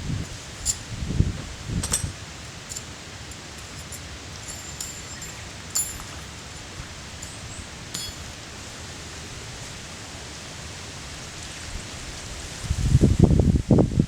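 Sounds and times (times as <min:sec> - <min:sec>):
light metallic clinks: 0:00.0 - 0:08.8
outdoor hiss: 0:00.0 - 0:14.0.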